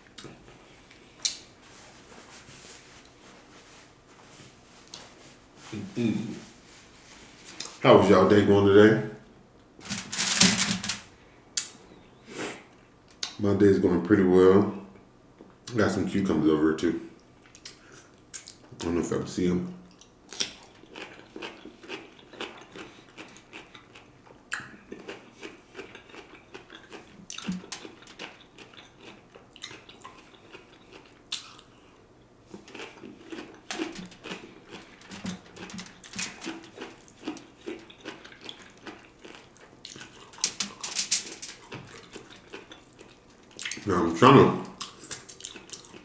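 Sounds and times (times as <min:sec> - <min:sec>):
wet smacks of eating: 0:00.1 - 0:01.5, 0:25.8 - 0:31.7, 0:44.7 - 0:46.0
chewing: 0:19.8 - 0:43.9, 0:44.7 - 0:46.0.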